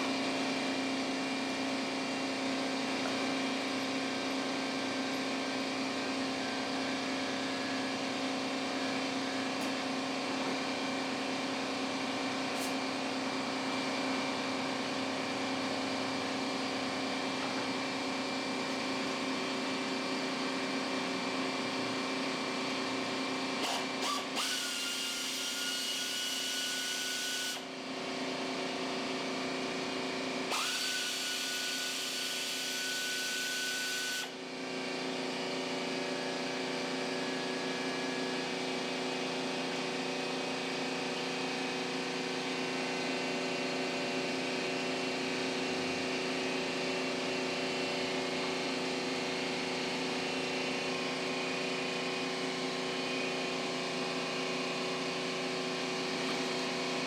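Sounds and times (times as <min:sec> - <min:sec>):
power tool whine: 0:23.5 - 0:27.7, 0:30.3 - 0:35.1
small engine running: 0:23.5 - 0:27.7, 0:30.4 - 0:34.9.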